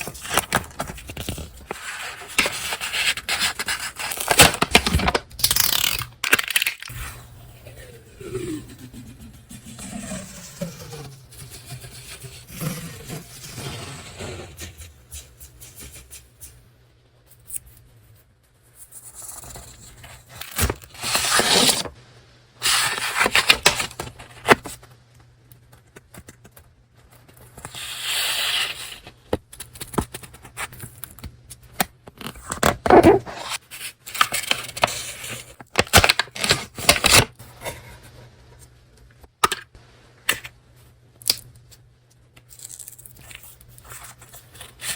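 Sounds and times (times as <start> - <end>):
paper tearing and rustling: 0.0 - 7.0, 19.2 - 21.9, 22.6 - 24.8, 32.2 - 37.3.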